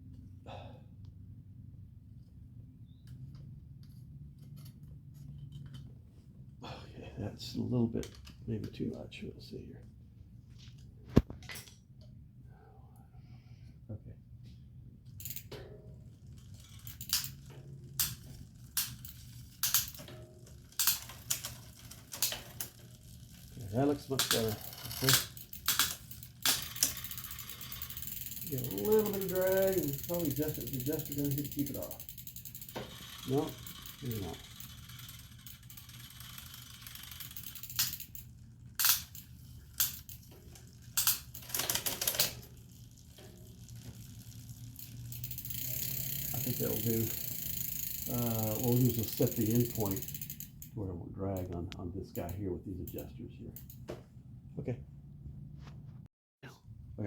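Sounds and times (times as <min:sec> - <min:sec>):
bicycle chain rasping: 0:15.1 - 0:51.5.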